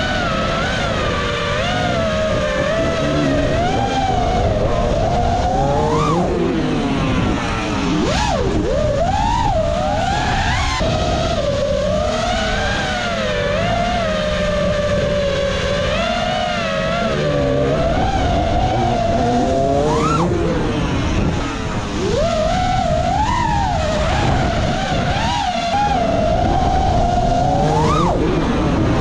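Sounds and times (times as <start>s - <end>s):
propwash and wind noise: 0.0s - 29.0s
quadcopter motors whining: 0.0s - 29.0s.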